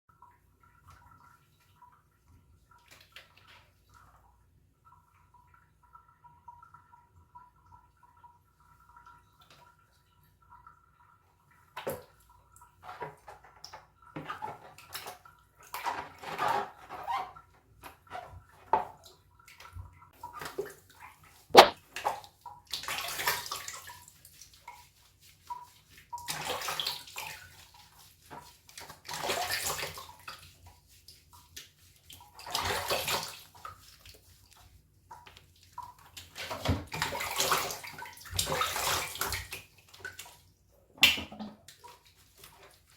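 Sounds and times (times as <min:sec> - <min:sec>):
water poured and splashed in bath: 0:00.1 - 0:42.9
sharp knock: 0:21.6 - 0:21.8.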